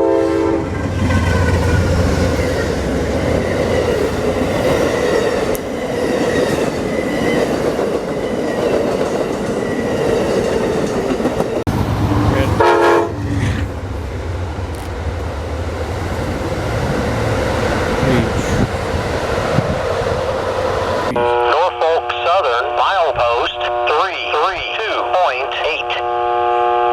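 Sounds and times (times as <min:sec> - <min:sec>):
train horn: 0:00.0 - 0:01.2, 0:12.0 - 0:13.6, 0:21.1 - 0:24.2, 0:25.9 - 0:26.9
train rumbling past: 0:00.0 - 0:26.9.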